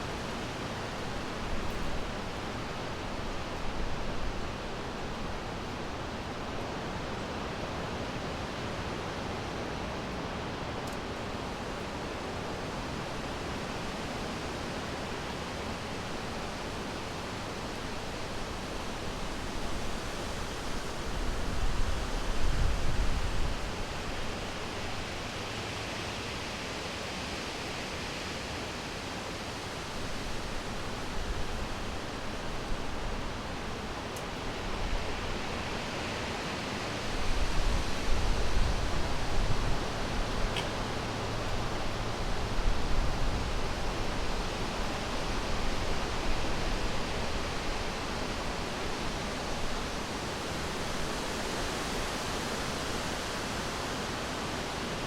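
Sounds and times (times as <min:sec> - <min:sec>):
wind blowing through forest: 0:00.0 - 0:55.0.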